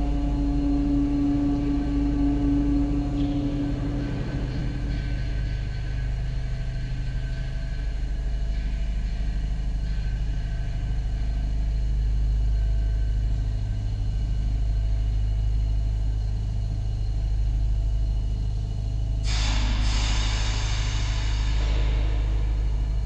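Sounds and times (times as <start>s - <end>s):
faint constant tones: 0.0s - 19.3s
deep mechanical hum: 0.0s - 23.0s
loud hiss: 19.3s - 23.0s.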